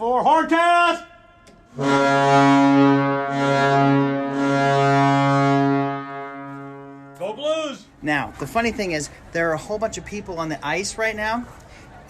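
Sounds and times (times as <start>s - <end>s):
low goal horn blast: 1.7s - 7.4s.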